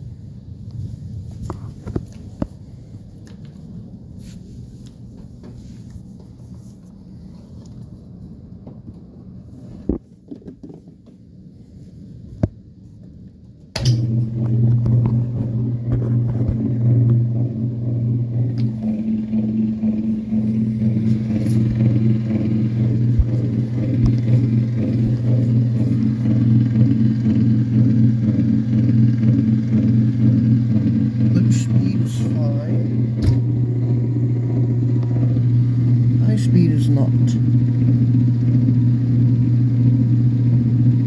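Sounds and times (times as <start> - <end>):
washing machine loud buzz: 13.8 - 41.0.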